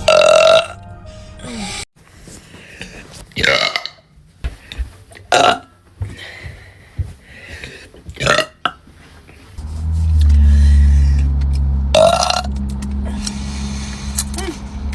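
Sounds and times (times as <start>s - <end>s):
loud steady low rumble: 9.6s - 14.9s.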